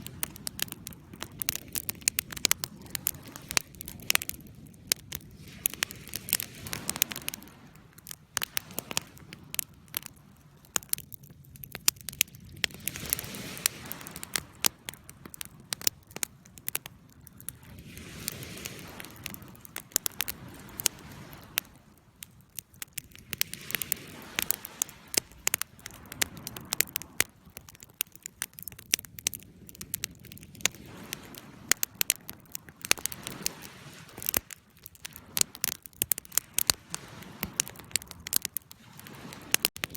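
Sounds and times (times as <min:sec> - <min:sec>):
hiss of flames: 0:00.0 - 0:10.4, 0:12.5 - 0:16.2, 0:17.4 - 0:22.0, 0:22.9 - 0:27.9, 0:29.2 - 0:39.9
campfire crackling and popping: 0:00.0 - 0:39.9.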